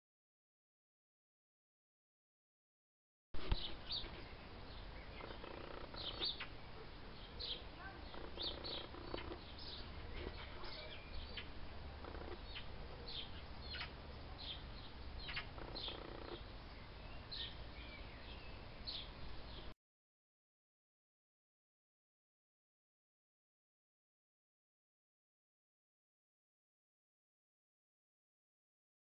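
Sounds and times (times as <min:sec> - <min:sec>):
lower longer bird calls: 0:03.4 - 0:19.7
small birds chirping: 0:03.4 - 0:19.8.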